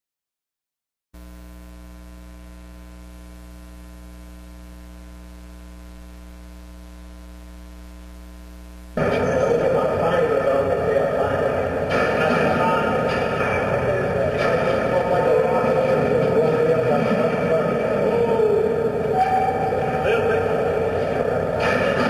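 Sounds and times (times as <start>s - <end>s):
electrical mains hum: 1.2s - 22.0s
loud noisy sound: 9.0s - 22.0s.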